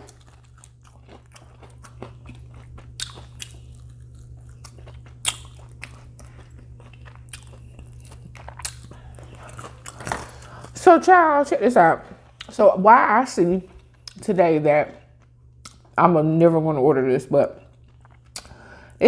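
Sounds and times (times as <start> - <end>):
chewing crispy fried chicken: 0.0 - 10.9, 13.6 - 16.0, 17.5 - 19.0
steady low hum: 0.0 - 19.0.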